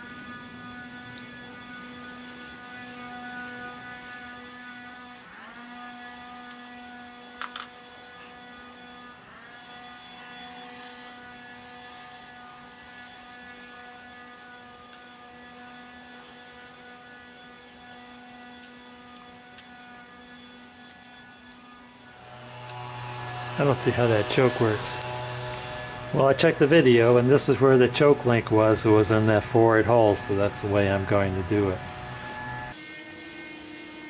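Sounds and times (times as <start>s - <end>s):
steady hum: 22.2s - 32.8s.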